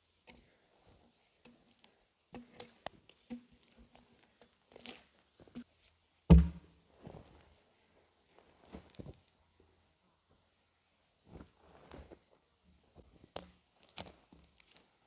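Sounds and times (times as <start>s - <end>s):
heavy low thud: 6.3s - 6.6s.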